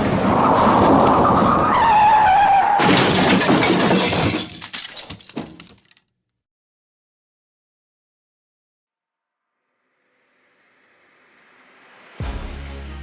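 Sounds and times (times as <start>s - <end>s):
loud crash of something breaking: 2.7s - 5.6s
clattering debris: 2.8s - 6.1s.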